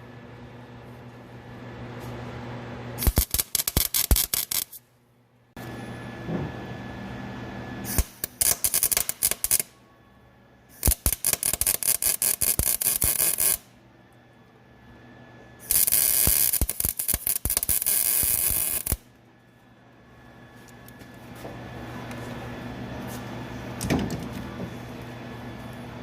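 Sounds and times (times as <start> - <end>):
arc welder crackling: 3.0 - 4.9, 7.8 - 9.8, 10.7 - 13.8, 15.6 - 19.2.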